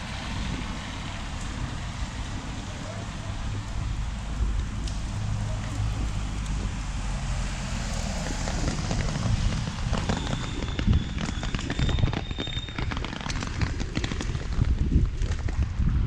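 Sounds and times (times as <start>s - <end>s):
heavy rain: 0.0s - 11.4s
low rumble: 0.0s - 12.8s
raindrops crackling on microphone: 0.0s - 16.0s.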